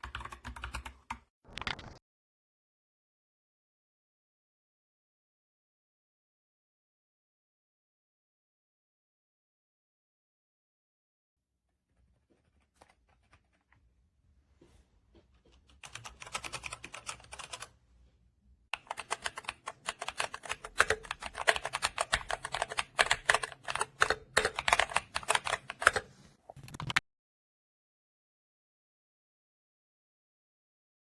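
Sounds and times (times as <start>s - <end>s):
typing on mechanical keyboard: 0.0s - 1.2s, 15.7s - 17.7s, 18.8s - 27.0s.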